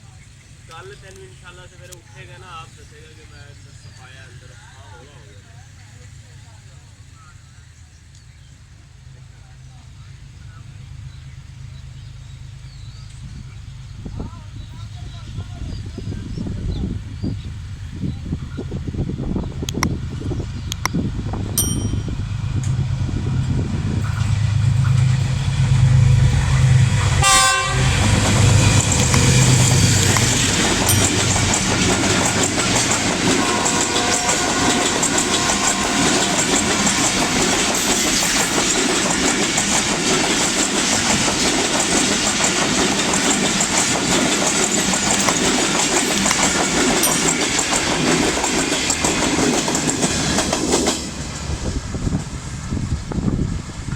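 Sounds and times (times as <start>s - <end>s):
diesel locomotive engine drone: 0.0s - 53.9s
train wheels clattering on rails: 19.4s - 52.5s
train horn blast: 26.9s - 37.4s.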